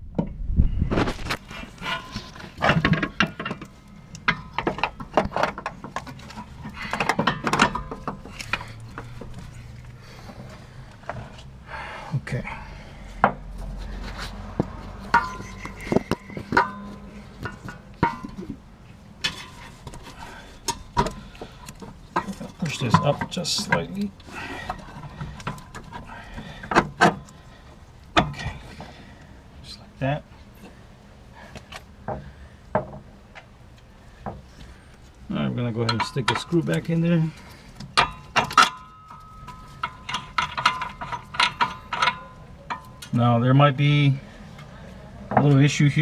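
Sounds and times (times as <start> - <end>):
metal parts clinking and knocking: 1.8 - 10.0, 14.5 - 18.6, 19.2 - 29.0, 35.8 - 43.2.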